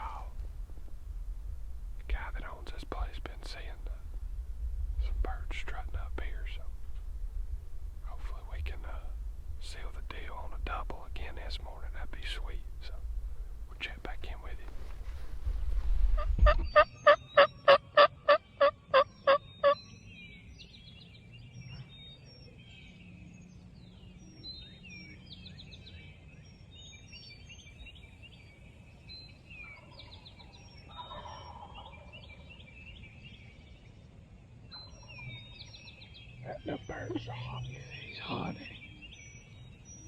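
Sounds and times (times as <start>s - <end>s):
songbirds chirping: 0.0s - 40.0s
distant turkey gobble: 16.2s - 19.8s, 29.6s - 32.5s
turkey yelping: 16.2s - 19.8s, 31.0s - 32.1s.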